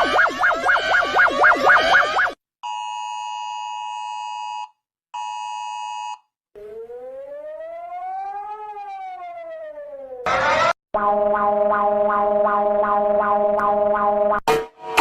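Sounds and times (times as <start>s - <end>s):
siren rising and falling: 0.0s - 2.4s, 6.6s - 14.4s.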